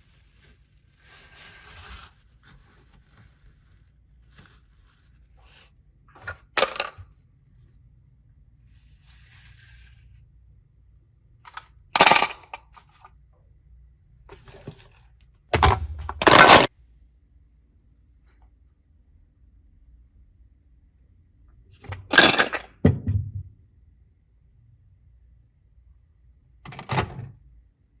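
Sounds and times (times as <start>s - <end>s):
small objects clattering: 15.6s - 16.7s.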